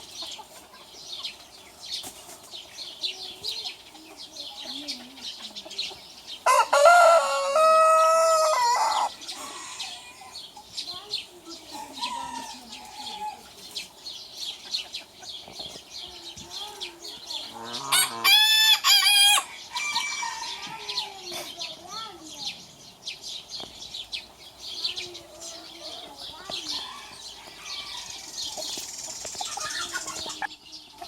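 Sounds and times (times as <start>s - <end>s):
chicken clucking: 0.0s - 21.8s, 24.7s - 31.0s
roosters crowing: 6.4s - 10.4s, 11.7s - 13.6s, 17.5s - 21.3s, 25.4s - 30.5s.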